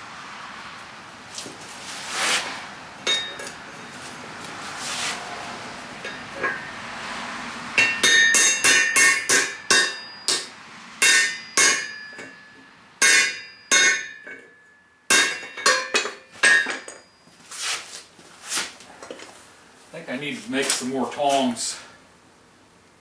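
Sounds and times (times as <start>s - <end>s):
hammer striking hot steel on anvil: 3.0s - 3.5s, 7.8s - 17.1s.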